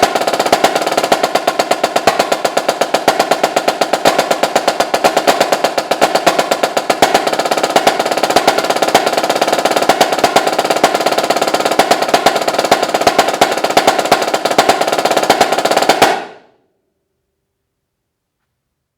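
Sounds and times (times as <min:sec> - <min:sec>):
snare drum rolls: 0:00.0 - 0:16.6.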